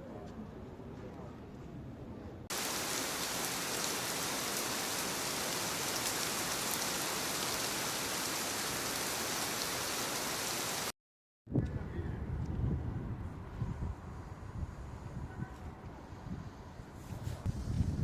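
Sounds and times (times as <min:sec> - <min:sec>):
splashing water rushing: 0:02.5 - 0:10.9.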